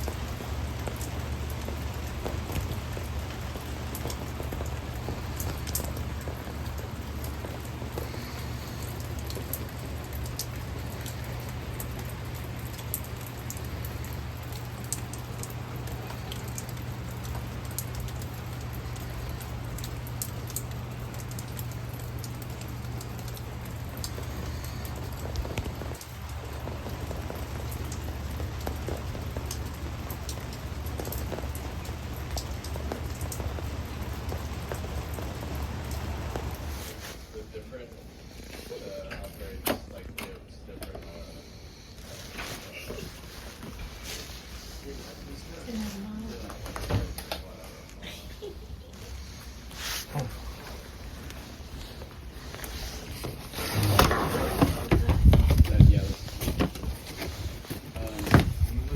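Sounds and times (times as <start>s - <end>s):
rain drops ticking: 0.0s - 58.9s
low storm rumble: 50.2s - 58.9s.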